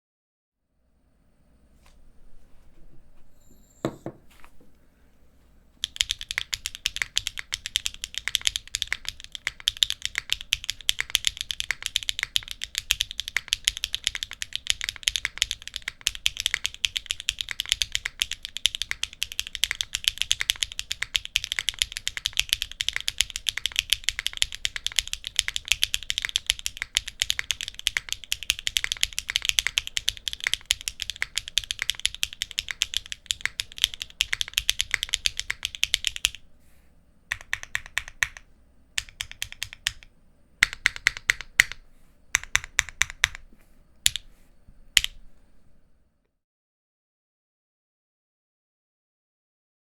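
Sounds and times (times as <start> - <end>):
fast mechanical keyboard typing: 5.8 - 36.4, 37.3 - 41.8, 42.4 - 44.3, 45.0 - 45.2.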